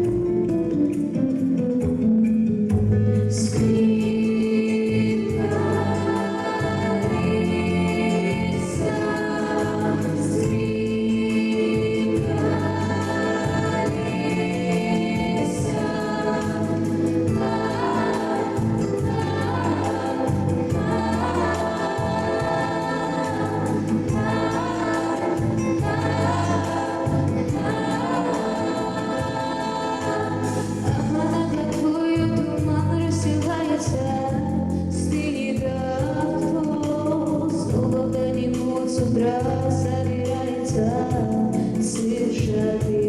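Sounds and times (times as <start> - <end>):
wordless choir singing: 3.4 - 33.9
low bass line: 5.0 - 33.3.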